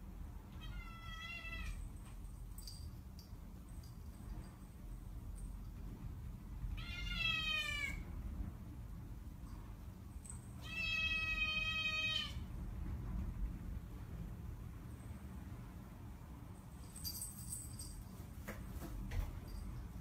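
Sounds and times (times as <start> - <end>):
kitten meowing: 6.8 - 8.0, 10.6 - 12.4.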